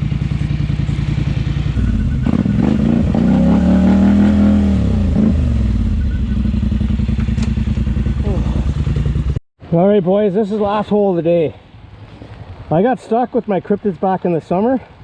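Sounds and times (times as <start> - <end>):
atv engine idling and revving: 0.0 - 9.4.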